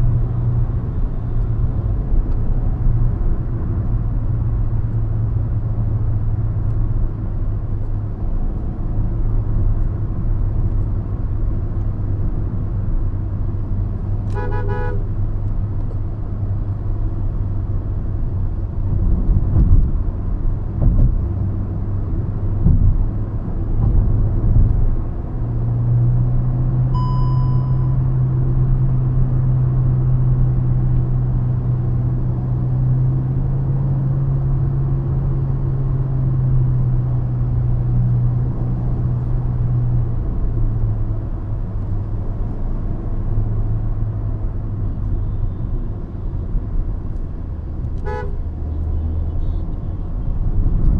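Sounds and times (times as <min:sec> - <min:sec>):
car engine and road hum: 0:00.0 - 0:50.9
car horn beep: 0:14.3 - 0:15.1, 0:26.9 - 0:28.0, 0:48.0 - 0:50.0
thumps from road bumps: 0:19.0 - 0:20.1, 0:20.7 - 0:21.5, 0:22.5 - 0:24.9.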